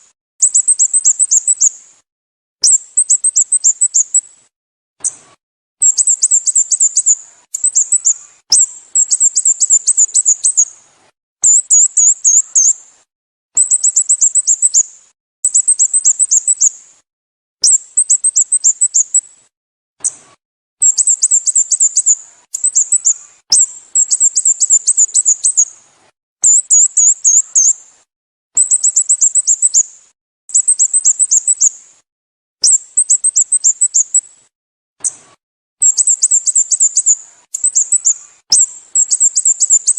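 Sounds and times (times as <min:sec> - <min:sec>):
bird high chirping: 0:00.4 - 0:01.8, 0:02.6 - 0:04.3, 0:05.8 - 0:10.8, 0:11.4 - 0:12.8, 0:13.6 - 0:16.8, 0:17.6 - 0:19.3, 0:20.8 - 0:25.8, 0:26.4 - 0:27.8, 0:28.6 - 0:31.8, 0:32.6 - 0:34.4, 0:35.8 - 0:39.9.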